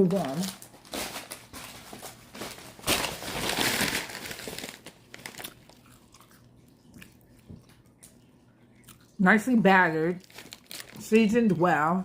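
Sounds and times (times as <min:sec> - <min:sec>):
paper packaging crinkling: 0:00.0 - 0:06.2, 0:10.1 - 0:11.4.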